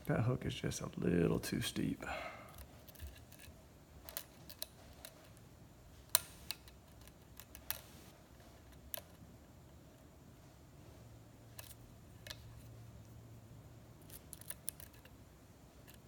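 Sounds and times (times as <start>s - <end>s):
lock pick clicking and scraping: 2.5s - 5.4s, 6.1s - 7.9s, 11.5s - 12.7s, 14.0s - 15.1s.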